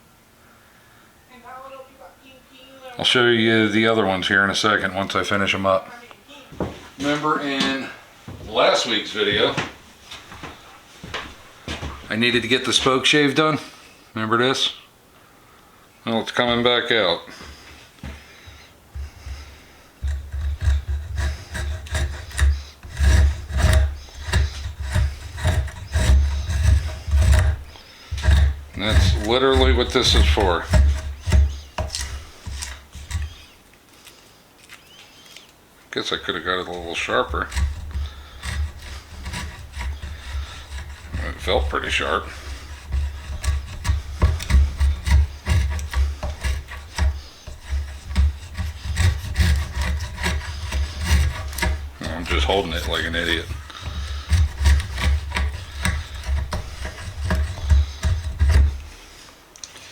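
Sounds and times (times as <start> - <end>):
spokeshave rasping on wood: 18.0 - 33.6, 36.7 - 59.3.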